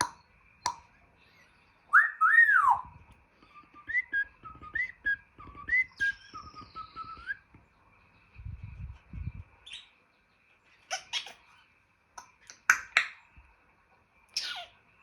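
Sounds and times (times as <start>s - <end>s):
parrot squeaky chirps: 1.3s - 2.9s, 9.6s - 10.0s, 10.8s - 11.7s, 14.3s - 14.8s
parrot sharp clicks: 12.2s - 13.2s.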